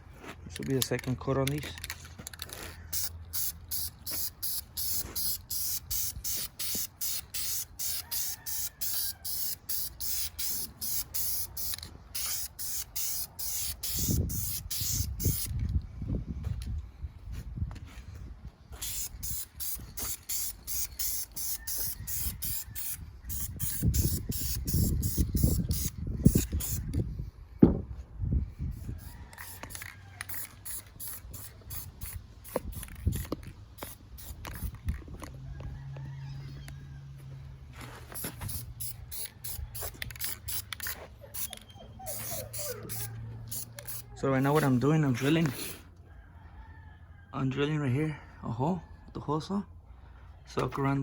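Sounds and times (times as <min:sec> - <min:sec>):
spray can bursts: 0:02.9 - 0:15.6, 0:18.8 - 0:26.8, 0:28.8 - 0:34.7, 0:38.2 - 0:45.8.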